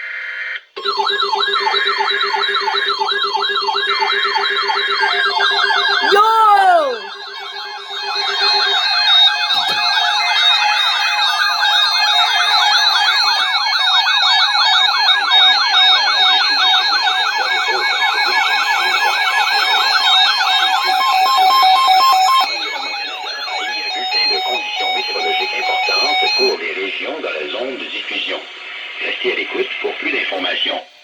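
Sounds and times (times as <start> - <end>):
siren-like warbling alert tone: 5.3 - 8.8.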